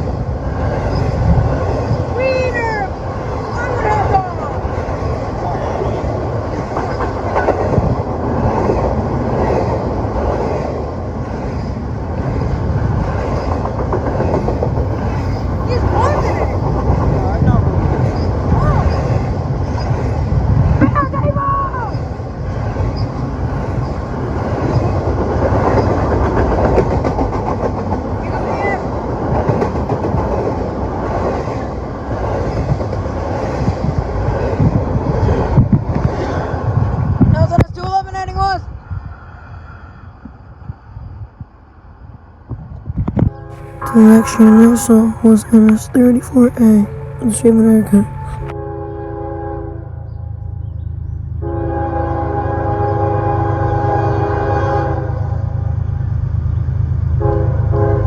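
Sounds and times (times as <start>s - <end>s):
wind buffeting microphone: 0.0s - 39.4s
freight train rumbling on rails: 0.0s - 58.0s.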